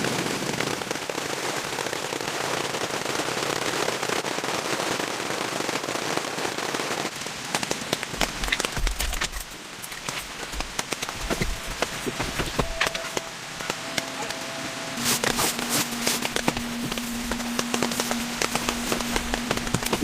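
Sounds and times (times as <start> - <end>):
rain pattering on a tent: 0.0 - 20.0.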